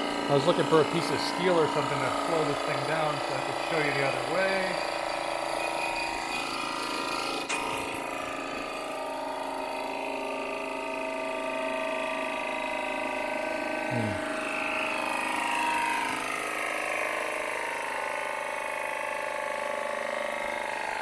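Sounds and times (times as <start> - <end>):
disc sander spinning down: 0.0 - 21.0.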